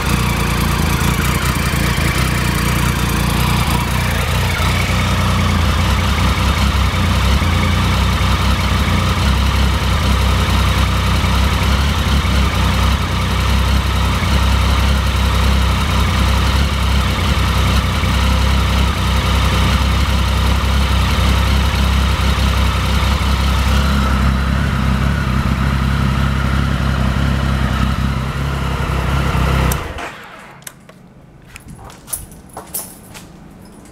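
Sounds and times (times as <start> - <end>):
motorcycle engine idling: 0.0 - 30.4.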